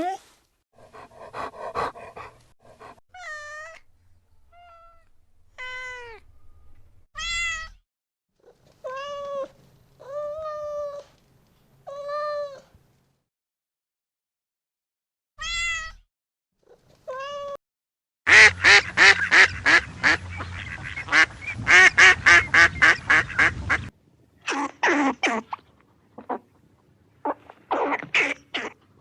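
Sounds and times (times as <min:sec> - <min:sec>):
cat meowing: 0:04.5 - 0:06.2, 0:07.2 - 0:07.8, 0:15.4 - 0:16.0.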